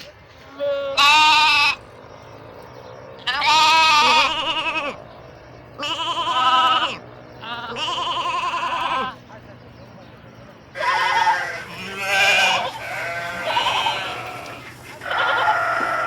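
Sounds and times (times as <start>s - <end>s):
sheep bleating: 0.5s - 1.8s, 3.2s - 5.0s, 5.8s - 9.2s, 10.8s - 16.0s.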